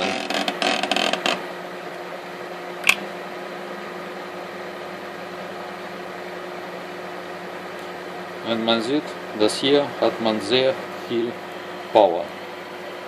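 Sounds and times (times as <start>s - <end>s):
sharp click: 2.8s - 3.0s.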